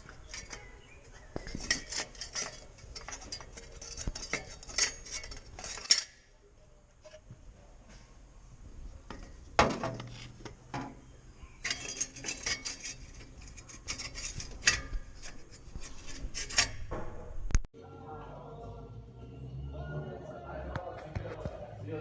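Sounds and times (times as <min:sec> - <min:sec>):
metal heat shield rattling: 0:00.0 - 0:06.2, 0:11.6 - 0:17.3.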